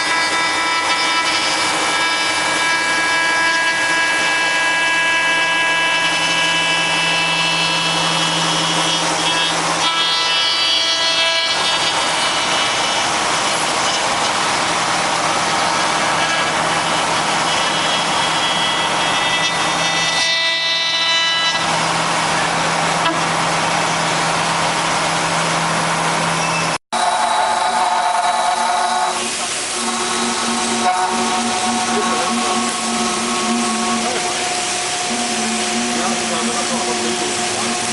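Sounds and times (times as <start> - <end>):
router spindle whine: 0.0 - 26.4, 27.0 - 37.9
wood cutting noise: 26.9 - 37.9.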